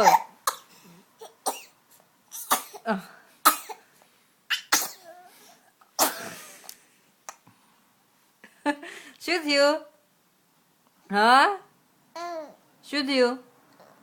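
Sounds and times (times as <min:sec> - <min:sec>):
young child sneezing: 0:04.5 - 0:05.3, 0:06.0 - 0:06.5.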